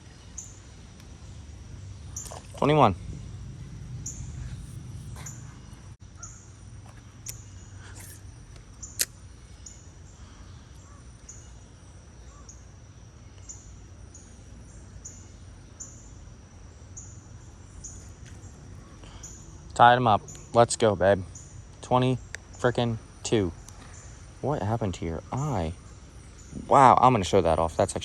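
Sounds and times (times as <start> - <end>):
steady low rumble: 0.0 - 9.4.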